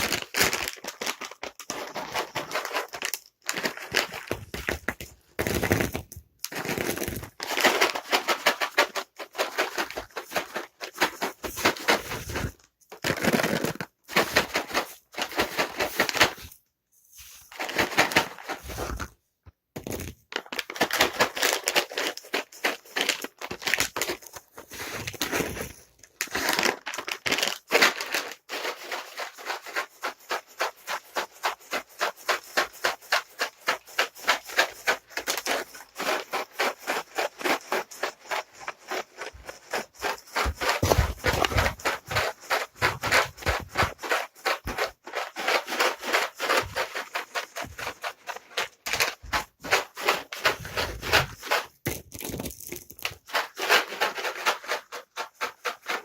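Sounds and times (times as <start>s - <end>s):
cat treats rattling in a container: 0.0s - 16.6s, 17.2s - 19.1s, 19.8s - 56.0s.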